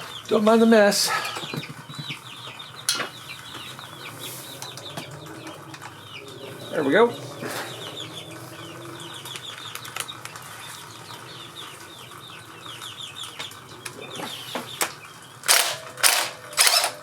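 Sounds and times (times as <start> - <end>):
chicks peeping: 0.0 - 16.6
loud noisy bursts: 15.4 - 17.0.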